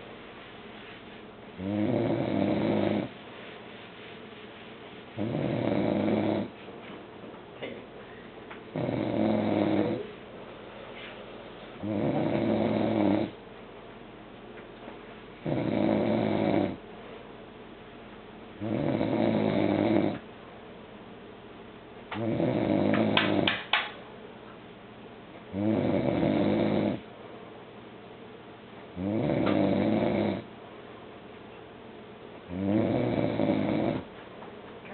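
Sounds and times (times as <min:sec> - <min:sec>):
man snoring: 0:01.6 - 0:03.1, 0:05.2 - 0:06.5, 0:08.8 - 0:10.0, 0:11.8 - 0:13.4, 0:15.4 - 0:16.8, 0:18.6 - 0:20.2, 0:22.2 - 0:23.4, 0:25.5 - 0:27.0, 0:29.0 - 0:30.4, 0:32.5 - 0:34.0
sharp clicks in snore: 0:22.2 - 0:23.6, 0:29.4 - 0:29.8.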